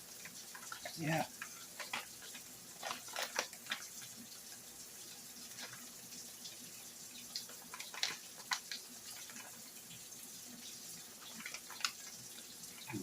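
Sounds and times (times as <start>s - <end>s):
roux sizzling in a frying pan: 0.0s - 13.0s
small crackles: 0.0s - 13.0s.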